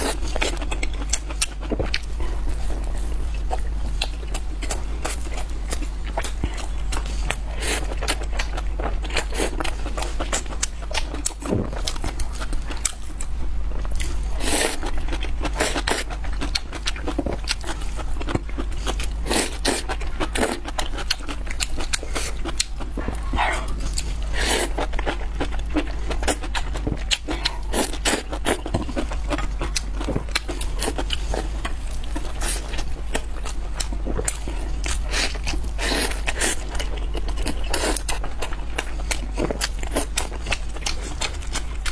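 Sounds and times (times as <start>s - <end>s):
chewing crunchy food: 0.0s - 41.9s
low hum: 22.8s - 30.8s.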